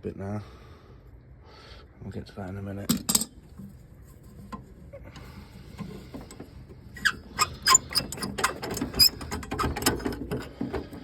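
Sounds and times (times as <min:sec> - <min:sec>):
faint handling noise: 0:02.5 - 0:07.2.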